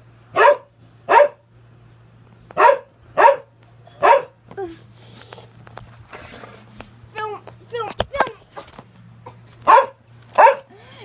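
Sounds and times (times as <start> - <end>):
dog barking: 0.4 - 1.4, 2.6 - 4.4, 9.6 - 10.7.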